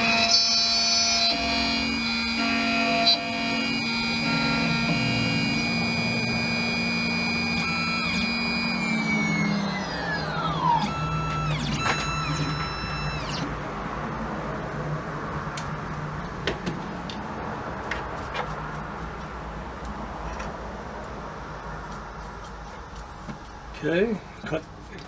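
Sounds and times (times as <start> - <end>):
key-cutting machine motor whine: 0.0 - 13.6
short machine whirs: 0.0 - 13.6.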